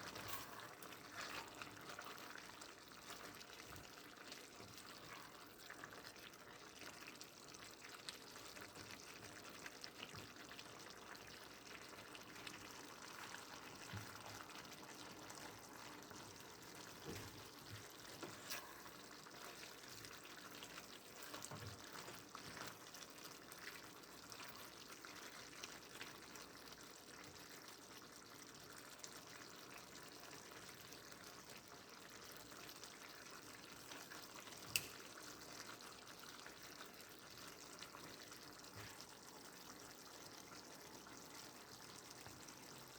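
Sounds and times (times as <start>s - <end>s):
small crackles: 0.0s - 5.9s, 33.8s - 35.9s
vegetables sizzling in a pan: 0.0s - 42.9s.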